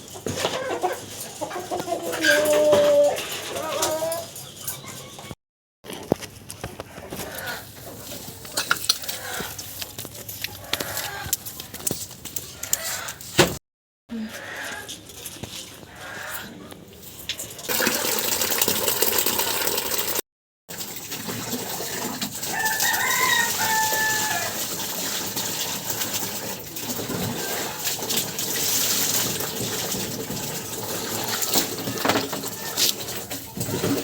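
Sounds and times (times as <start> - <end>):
water running and splashing: 17.6 - 34.0
rooster crowing: 22.5 - 24.6.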